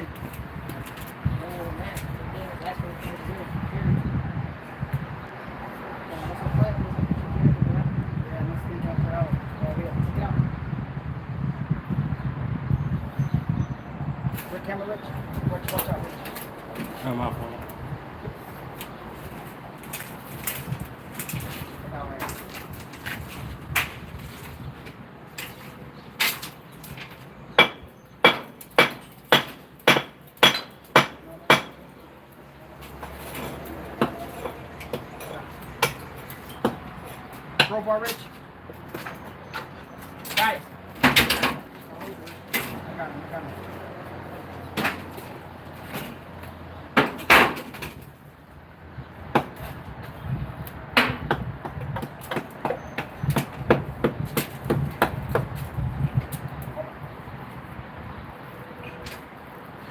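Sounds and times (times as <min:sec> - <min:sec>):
hammer striking steel: 0:27.6 - 0:31.8.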